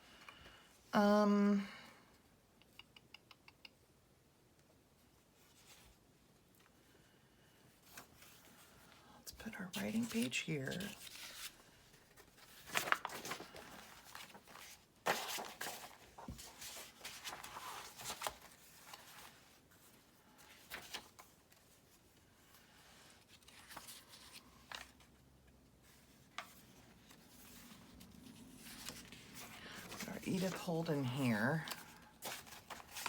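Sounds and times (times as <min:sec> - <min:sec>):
paper sheets rustling: 0:10.0 - 0:21.7, 0:25.8 - 0:33.0.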